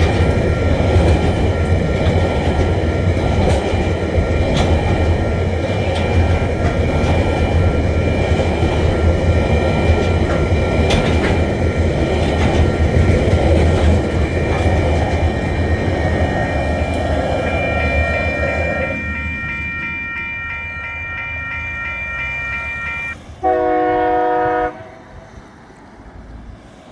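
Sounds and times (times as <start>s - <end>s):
wheel clatter: 0.0s - 19.0s
crossing warning bell ringing: 0.0s - 24.7s
train wagons rumbling: 0.0s - 26.9s
train horn blast: 23.4s - 25.2s.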